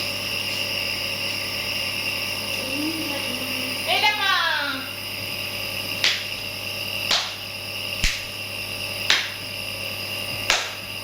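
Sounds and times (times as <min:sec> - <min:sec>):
steady low hum: 0:00.0 - 0:11.0
sharp snapping clicks: 0:06.0 - 0:06.3, 0:07.1 - 0:07.4, 0:08.0 - 0:08.3, 0:09.1 - 0:09.4, 0:10.5 - 0:10.8.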